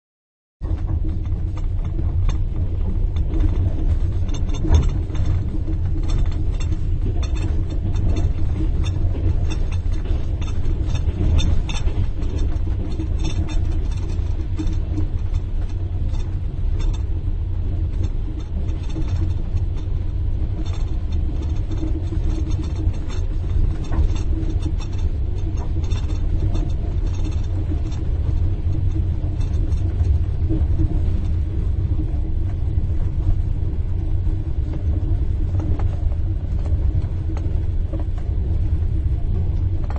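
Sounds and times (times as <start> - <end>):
train rumbling: 0.6 - 39.9.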